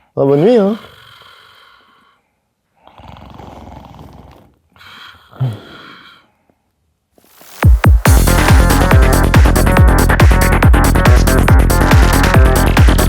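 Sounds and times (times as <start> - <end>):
man snoring: 0.4 - 2.0, 2.8 - 6.2
throaty snort: 0.6 - 2.2, 2.8 - 6.3.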